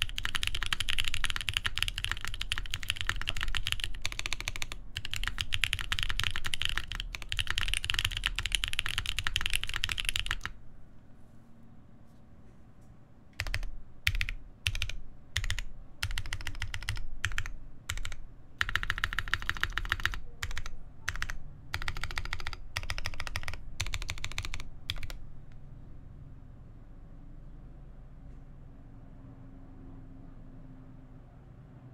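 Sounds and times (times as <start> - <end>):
mechanical keyboard typing: 0.0 - 10.6, 13.4 - 25.2.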